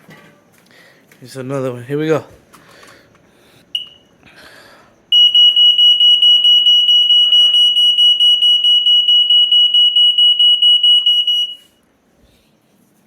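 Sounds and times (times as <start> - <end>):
smoke alarm fluttering tone: 5.1 - 11.8.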